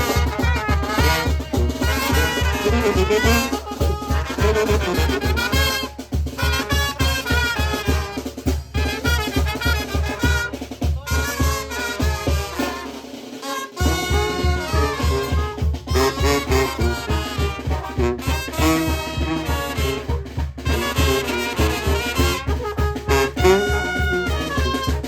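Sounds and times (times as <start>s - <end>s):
brass band dance music: 0.0s - 25.0s
thumping bass beat: 13.8s - 25.0s.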